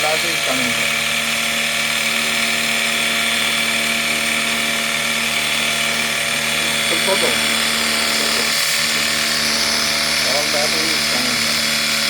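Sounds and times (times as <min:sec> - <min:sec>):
pressure washer motor hum: 0:00.0 - 0:12.0
water spray hissing: 0:06.0 - 0:12.0.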